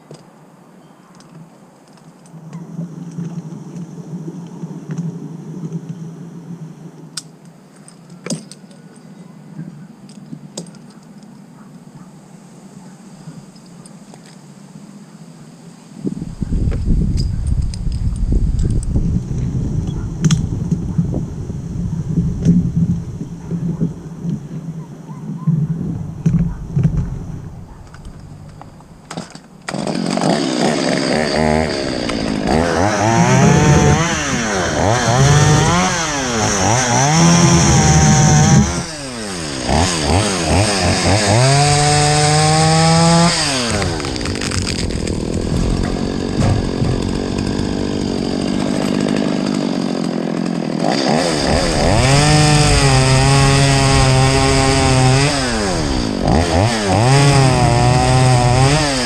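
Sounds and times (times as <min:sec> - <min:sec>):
chainsaw cutting wood: 0:25.9 - 0:59.0.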